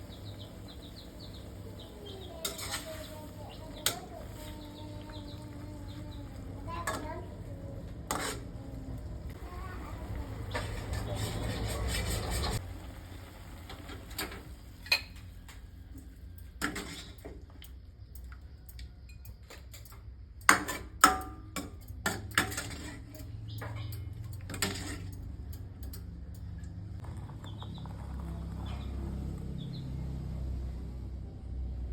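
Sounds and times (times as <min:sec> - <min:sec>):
metal utensils clinking on cookware: 0:02.0 - 0:08.7, 0:16.4 - 0:17.4, 0:19.2 - 0:26.1.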